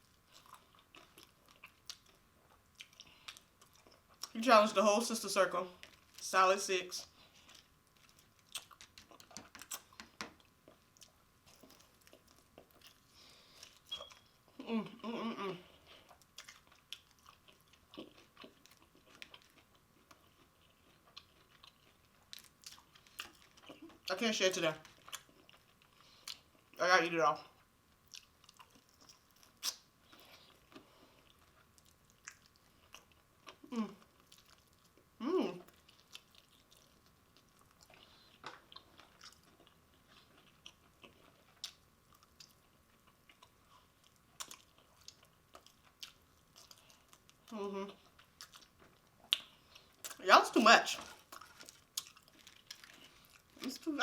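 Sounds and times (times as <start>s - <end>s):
chewing crunchy food: 0.0s - 4.4s, 5.7s - 6.2s, 7.0s - 14.7s, 15.6s - 24.2s, 24.8s - 26.8s, 27.4s - 50.2s, 50.8s - 54.0s
small crunches: 51.0s - 53.8s.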